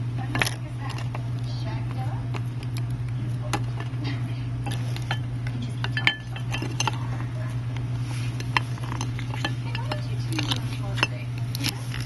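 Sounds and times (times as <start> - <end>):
steady low hum: 0.0 - 12.0
glass clinking against glass: 4.7 - 7.0.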